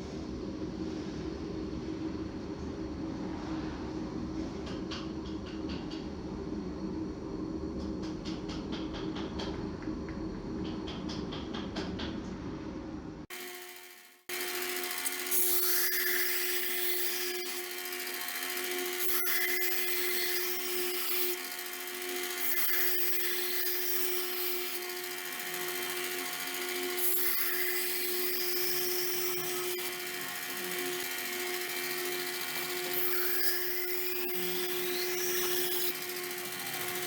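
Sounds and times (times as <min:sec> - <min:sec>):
electric grinder grinding steel: 0:13.3 - 0:37.0.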